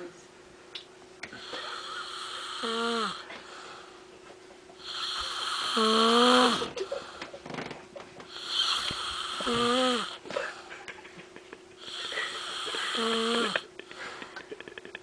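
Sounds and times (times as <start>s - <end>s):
faint steady hum: 0.0s - 15.0s
person snoring: 1.4s - 3.9s, 4.8s - 6.8s, 8.3s - 10.2s, 11.8s - 13.7s.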